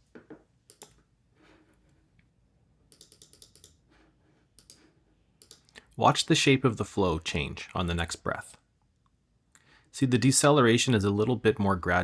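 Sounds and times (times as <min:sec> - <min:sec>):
faint computer clicks: 0:02.9 - 0:03.8.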